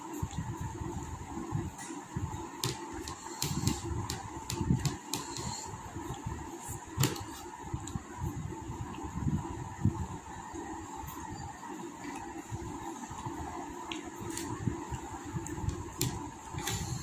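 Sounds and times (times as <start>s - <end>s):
electric fan humming: 0.0s - 17.0s
mouth clicks and smacks chewing: 13.8s - 14.1s.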